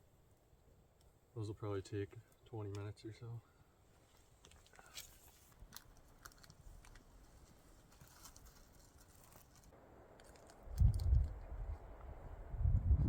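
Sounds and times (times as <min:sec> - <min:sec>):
faint crackles and ticks: 0:00.9 - 0:12.1
wind buffeting microphone: 0:10.6 - 0:13.0.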